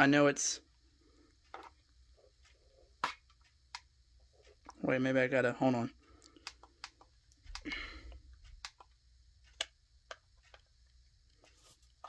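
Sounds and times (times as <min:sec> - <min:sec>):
alarm clock buttons clicking: 0:08.5 - 0:10.6.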